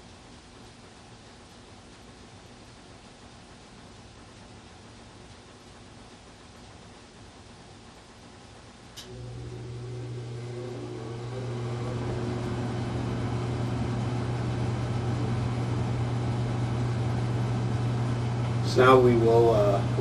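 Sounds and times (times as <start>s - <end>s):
fan blades whooshing: 8.8s - 20.0s
electric motor hum: 9.0s - 20.0s.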